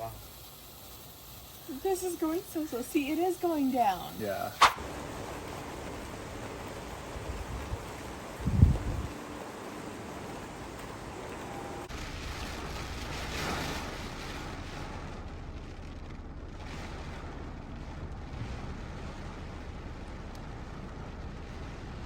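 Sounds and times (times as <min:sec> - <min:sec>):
wind buffeting microphone: 0:04.6 - 0:22.0.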